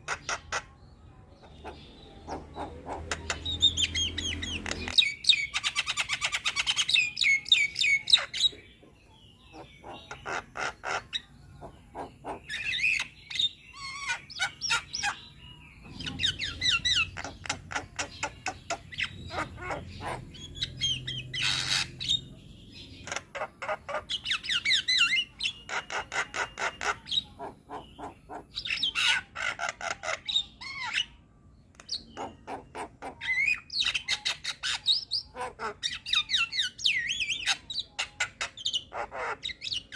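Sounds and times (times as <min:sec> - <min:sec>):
bird singing chattering phrases: 0:00.0 - 0:39.9.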